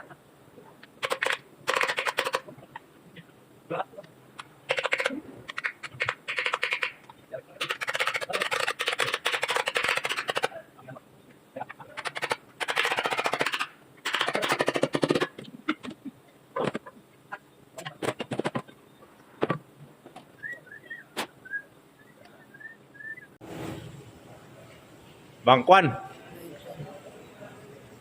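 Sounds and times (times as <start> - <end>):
sharp metallic clicks: 0.9 - 2.5, 11.9 - 15.8.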